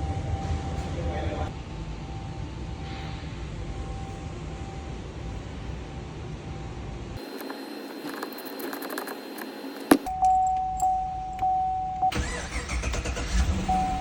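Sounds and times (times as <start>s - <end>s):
key clicking: 7.2s - 11.5s
car warning chime: 9.8s - 12.4s, 13.6s - 14.0s
car engine cranking and running: 12.1s - 14.0s.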